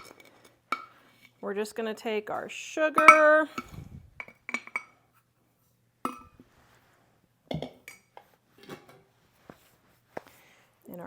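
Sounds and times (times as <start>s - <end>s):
spoon knocking against mixing bowl: 3.0s - 3.4s.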